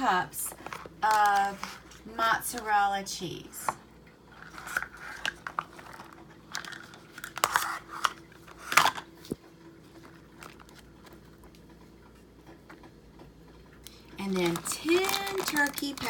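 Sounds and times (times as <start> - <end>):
shredded cheese crinkling: 13.9 - 16.0.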